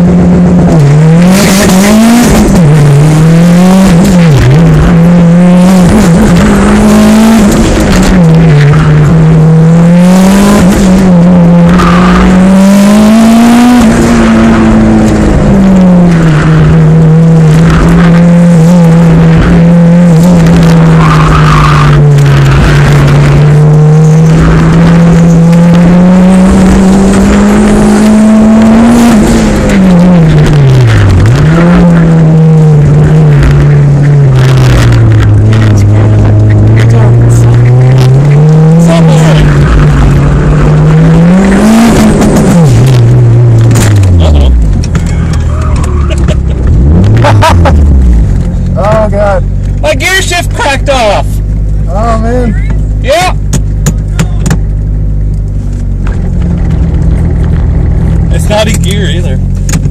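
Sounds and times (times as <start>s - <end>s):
car engine revving hard: 0.0s - 59.9s
tire squeals: 5.8s - 9.8s, 10.5s - 13.0s, 14.2s - 25.5s, 29.1s - 51.4s.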